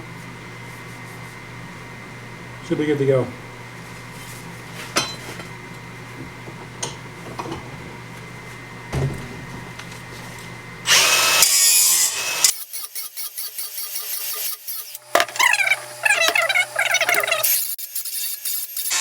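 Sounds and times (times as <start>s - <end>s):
power tool running: 10.8s - 19.0s.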